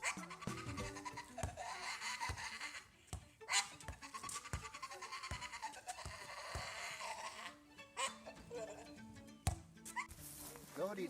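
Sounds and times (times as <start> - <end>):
animal wavering calls: 0.0 - 2.9, 3.5 - 9.0.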